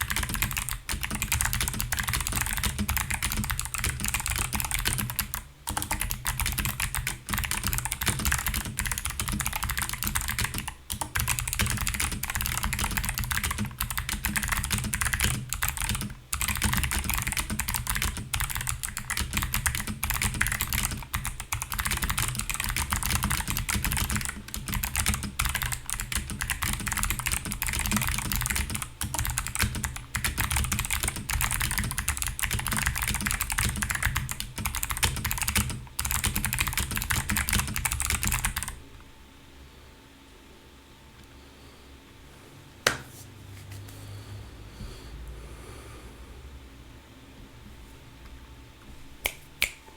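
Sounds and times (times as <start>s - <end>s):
mechanical keyboard typing: 0.0s - 38.8s.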